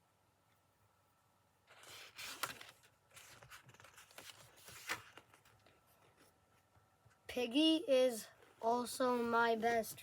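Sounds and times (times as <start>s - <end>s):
paper crackles: 1.7s - 5.7s
paper pages rustling: 1.7s - 6.3s.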